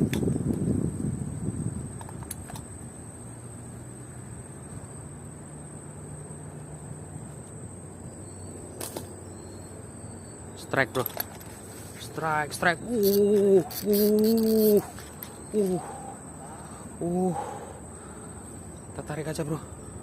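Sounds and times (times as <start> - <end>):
wind: 0.0 - 20.0
faint low engine hum: 2.6 - 20.0.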